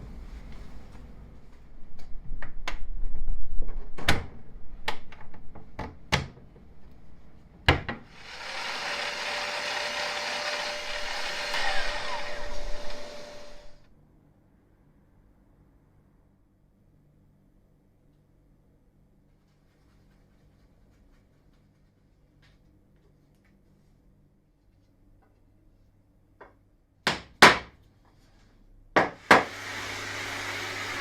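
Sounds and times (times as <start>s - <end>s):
handheld power tool running: 8.1s - 13.8s, 29.3s - 31.0s.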